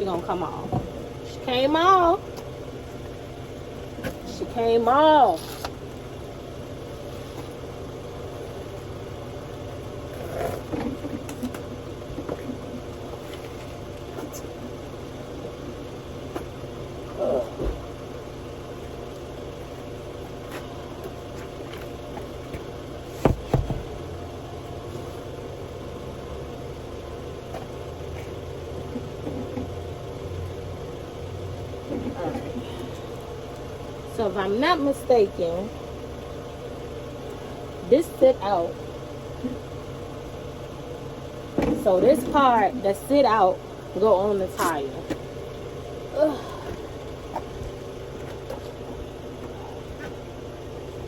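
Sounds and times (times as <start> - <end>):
low mechanical hum: 0.0 - 51.0
knocks of tire and tool handling: 20.5 - 24.0, 41.5 - 42.2.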